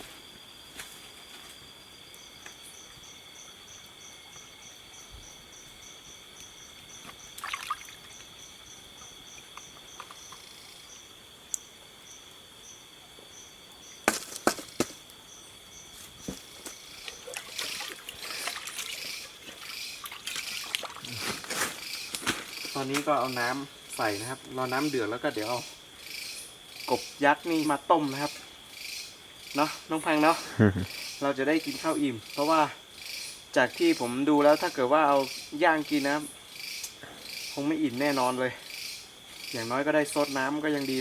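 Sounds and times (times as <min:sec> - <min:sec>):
high-pitched insect chorus: 0:00.0 - 0:41.0
water poured into pot: 0:07.4 - 0:08.0
camp gear knocking: 0:14.0 - 0:15.0.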